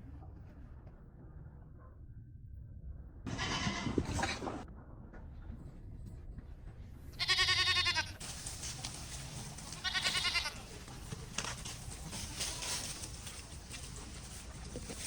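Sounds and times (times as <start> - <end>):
goat bleating: 3.3 - 4.0, 7.2 - 8.2, 9.7 - 10.8.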